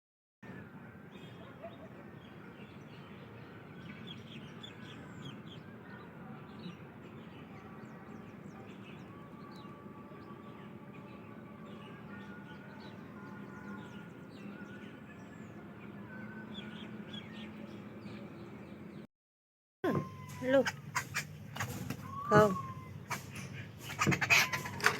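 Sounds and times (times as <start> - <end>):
small birds chirping: 1.1 - 19.1, 19.9 - 24.9.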